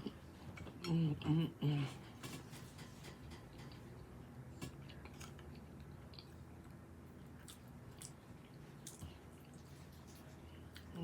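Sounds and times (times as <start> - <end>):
chewing food: 3.5 - 11.0.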